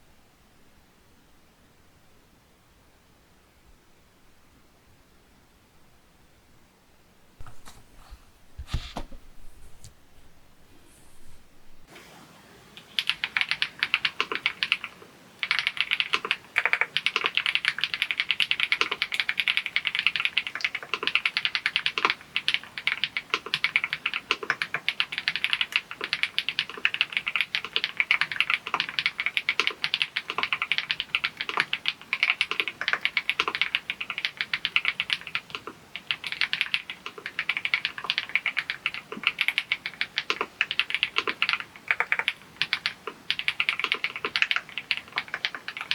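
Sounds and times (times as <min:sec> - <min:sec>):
mechanical keyboard typing: 0:12.8 - 0:45.9.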